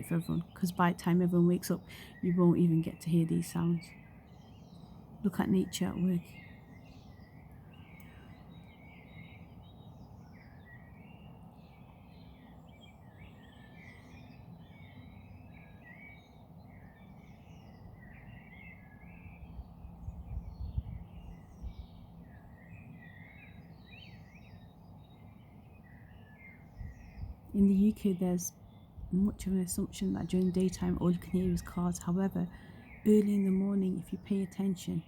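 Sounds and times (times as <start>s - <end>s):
birds singing and calling: 0.0s - 35.0s.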